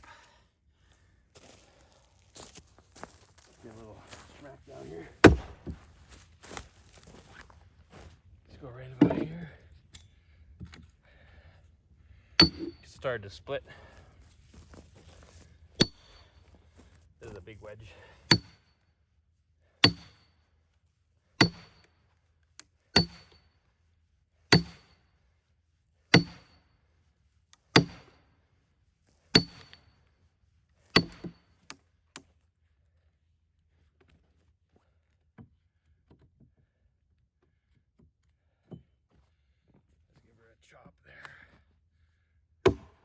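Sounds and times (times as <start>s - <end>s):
hammer striking steel wedge: 5.2s - 5.6s, 12.4s - 12.8s, 15.8s - 16.2s, 18.3s - 18.7s, 19.8s - 20.2s, 21.4s - 21.9s, 23.0s - 23.4s, 24.5s - 25.0s, 26.1s - 26.6s, 27.7s - 28.2s, 29.4s - 29.8s, 31.0s - 31.4s, 42.7s - 42.9s.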